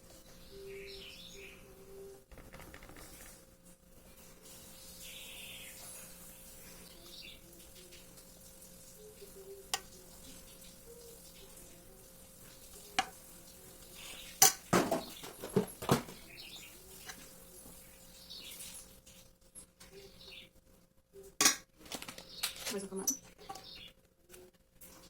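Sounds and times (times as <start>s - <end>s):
utensils clinking against dishes: 14.0s - 16.2s.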